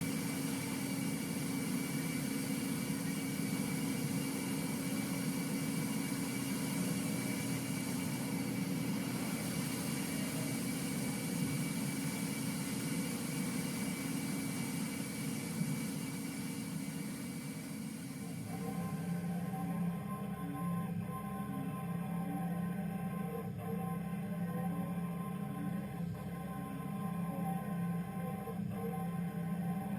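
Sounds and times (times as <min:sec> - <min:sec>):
faint high whine: 0:00.0 - 0:29.9
machine humming: 0:00.0 - 0:29.9.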